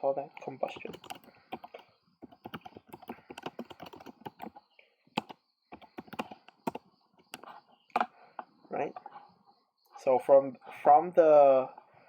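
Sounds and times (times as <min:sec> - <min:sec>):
typing on a computer keyboard: 0:00.4 - 0:08.1.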